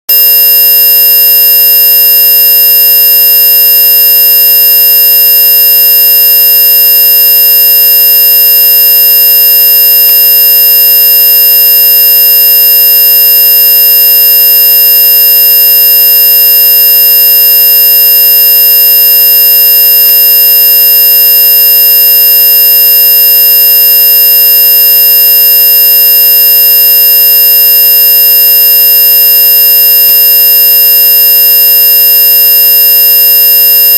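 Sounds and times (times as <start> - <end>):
electronic pure tones: 0.1 - 33.9.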